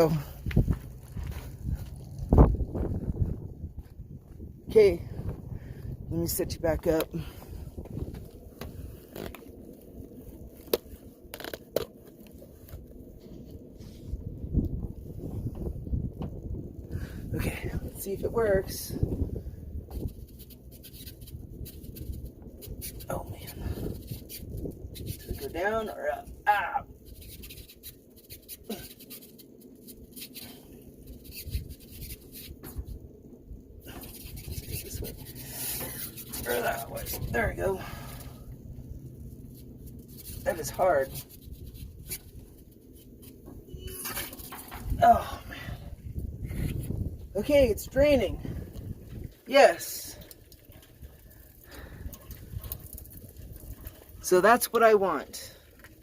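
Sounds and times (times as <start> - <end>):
wind on microphone: 0.0 - 9.3, 13.2 - 27.9, 31.1 - 42.8, 43.6 - 49.5, 50.1 - 54.2
camera rustling and scraping: 19.9 - 23.1, 23.8 - 25.6, 27.0 - 33.1, 33.9 - 37.3, 38.2 - 45.0, 46.4 - 47.3.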